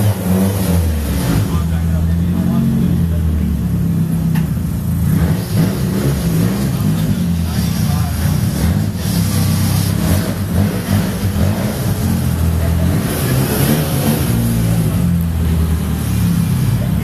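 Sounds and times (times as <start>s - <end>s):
car engine running: 0.0s - 17.0s.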